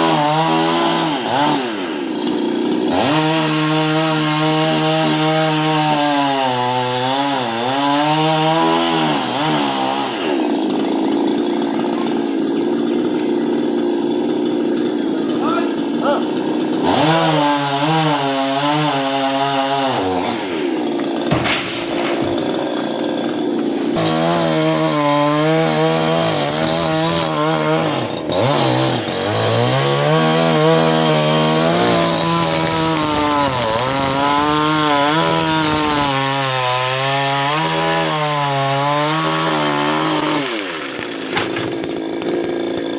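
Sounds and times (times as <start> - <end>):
chainsaw cutting wood: 0.0 - 42.9.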